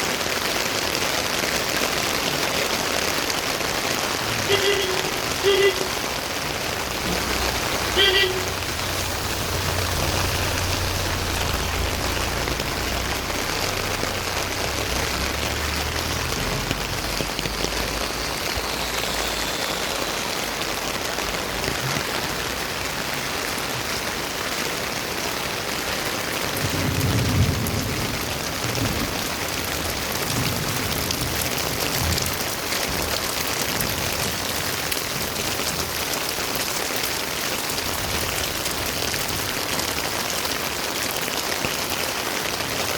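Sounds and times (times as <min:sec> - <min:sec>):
heavy rain hissing: 0:00.0 - 0:42.9
low rumble: 0:06.8 - 0:19.4.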